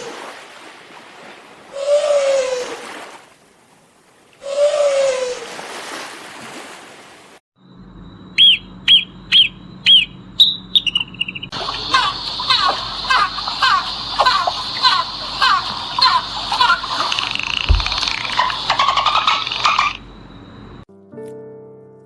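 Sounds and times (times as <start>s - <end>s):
bird chirping high whistles: 1.7s - 2.8s, 4.4s - 5.4s, 8.3s - 11.5s
animal call falling pitch: 1.7s - 3.2s, 4.4s - 5.6s.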